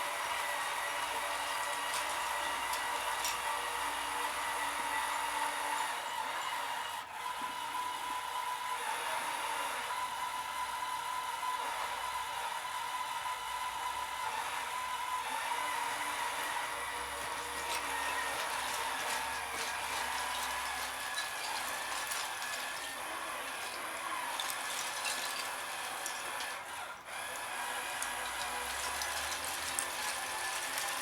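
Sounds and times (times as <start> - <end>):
crawler dozer engine whining: 15.3 - 31.0.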